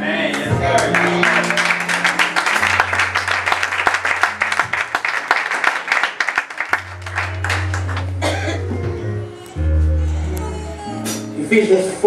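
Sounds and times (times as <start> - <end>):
band holding low notes: 0.0 - 5.7, 6.5 - 12.0
congregation applauding: 0.2 - 8.7.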